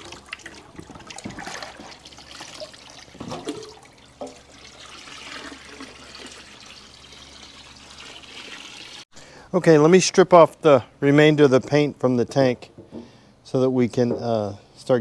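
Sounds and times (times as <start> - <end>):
liquid pouring and splashing: 0.0 - 9.0.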